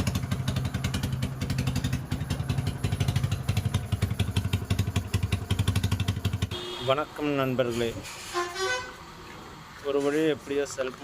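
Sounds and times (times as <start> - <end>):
motorcycle engine idling: 0.0 - 6.8.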